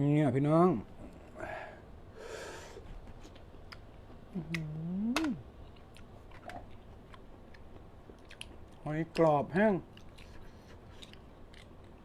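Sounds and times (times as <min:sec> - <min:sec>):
person humming: 0:04.3 - 0:05.5.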